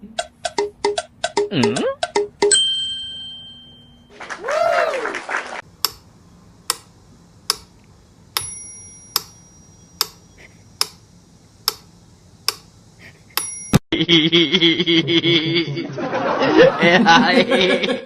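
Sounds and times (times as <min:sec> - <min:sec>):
sharp ticking: 0:00.1 - 0:02.6, 0:05.7 - 0:13.8
small bell-like ring: 0:02.5 - 0:04.1, 0:08.4 - 0:10.0, 0:13.4 - 0:13.8.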